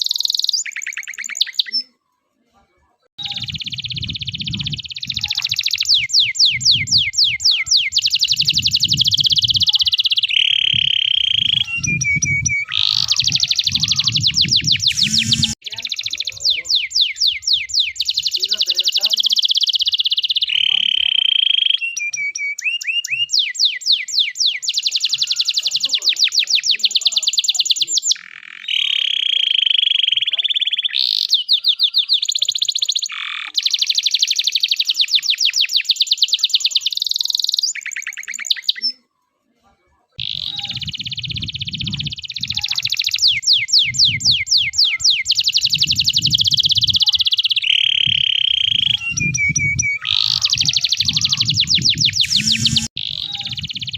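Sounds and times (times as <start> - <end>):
canary singing: 0.0 - 1.9, 3.2 - 39.0, 40.2 - 53.9
low rumbling noise: 14.4 - 15.6, 51.9 - 53.0.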